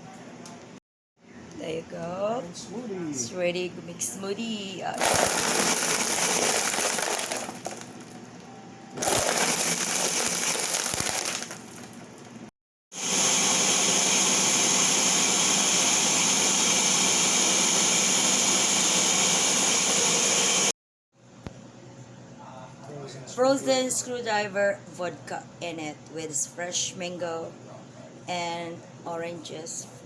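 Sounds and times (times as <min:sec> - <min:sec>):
blender crushing ice: 0:05.0 - 0:08.1, 0:09.0 - 0:12.3, 0:13.0 - 0:20.7.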